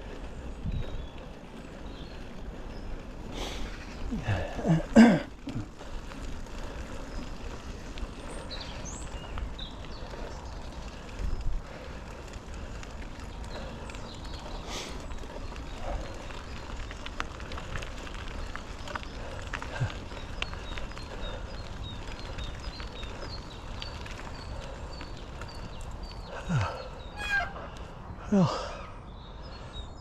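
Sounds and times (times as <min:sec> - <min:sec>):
wind buffeting microphone: 0:00.0 - 0:04.7, 0:05.5 - 0:28.3
bike tyres rolling on trail: 0:00.0 - 0:30.0.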